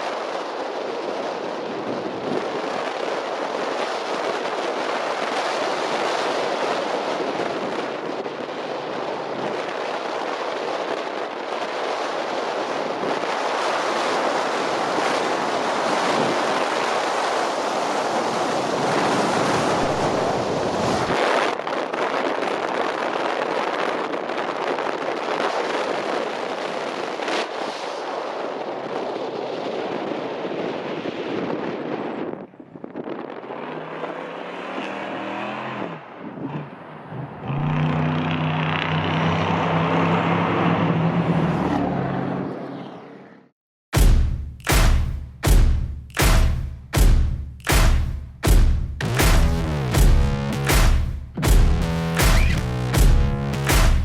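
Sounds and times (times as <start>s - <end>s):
wind rushing over microphone: 0.0s - 42.6s.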